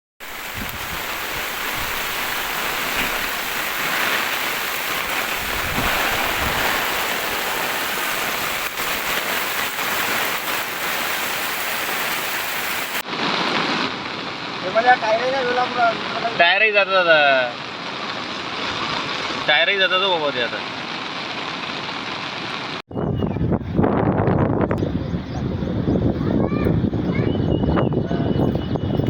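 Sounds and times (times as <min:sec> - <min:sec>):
heavy rain hiss: 0:00.2 - 0:22.8
running floodwater: 0:00.2 - 0:22.8.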